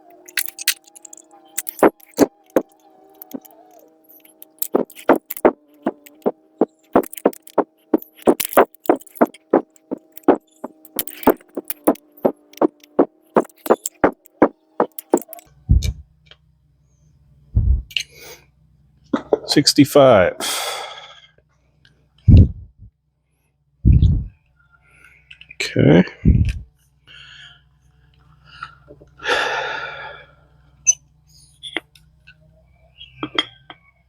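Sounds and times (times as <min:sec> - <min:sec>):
metallic clicks of parts and tools: 0:00.0 - 0:06.3, 0:06.9 - 0:15.5.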